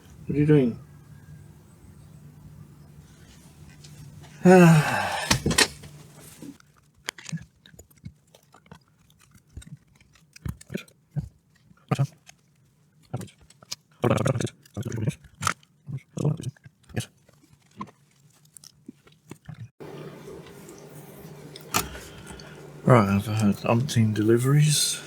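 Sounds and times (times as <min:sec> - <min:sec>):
background noise: 0:00.0 - 0:25.0
door creaking shut: 0:04.9 - 0:06.0.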